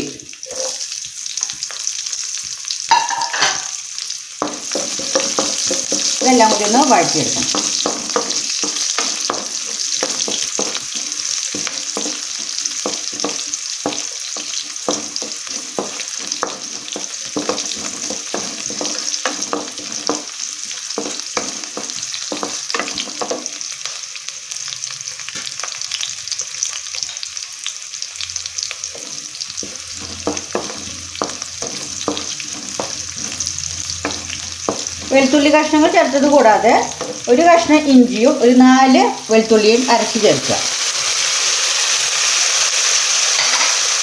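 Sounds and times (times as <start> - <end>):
food sizzling in oil: 0.0 - 44.0
spoon scraping a pan: 0.4 - 24.0, 28.4 - 37.9, 43.0 - 44.0.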